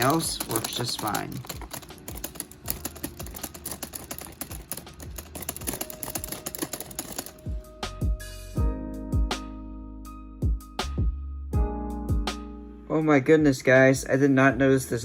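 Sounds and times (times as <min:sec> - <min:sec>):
plastic typewriter keys clicking: 0:00.0 - 0:07.4
music with a beat: 0:00.0 - 0:12.6.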